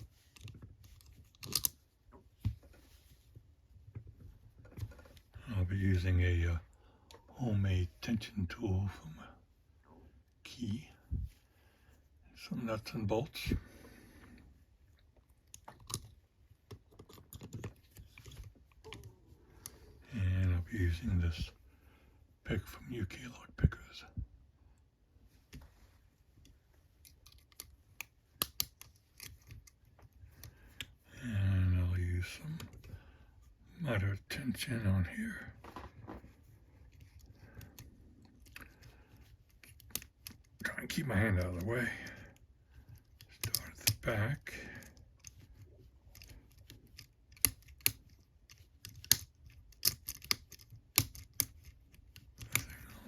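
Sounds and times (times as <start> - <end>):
lock pick clicks and taps: 0.4 - 1.8, 27.0 - 30.9, 39.5 - 40.6, 44.9 - 52.7.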